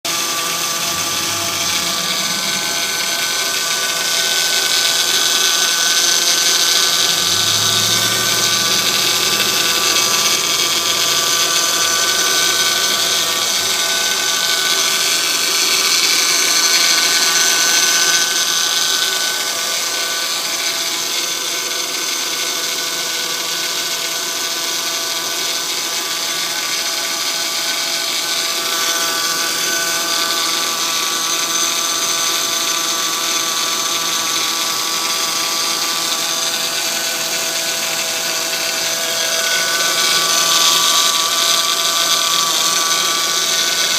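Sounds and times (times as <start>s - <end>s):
car engine running: 0.3s - 14.4s.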